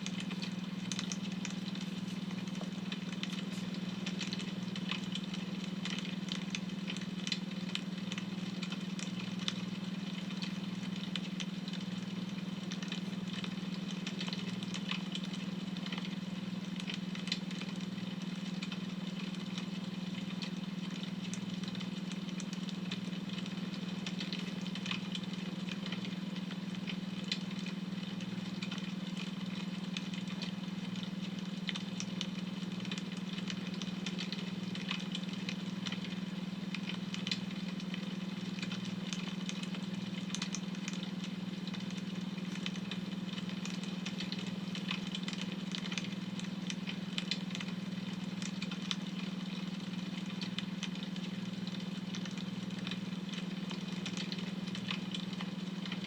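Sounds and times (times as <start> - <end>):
wood fire crackling: 0.0 - 15.3.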